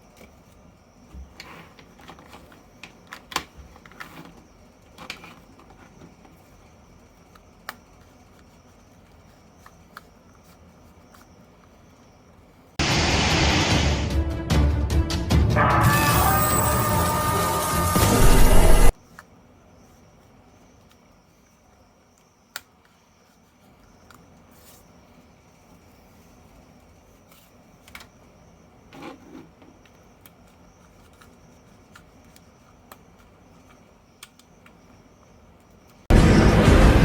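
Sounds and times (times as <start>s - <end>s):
faint high whine: 15.6s - 19.0s.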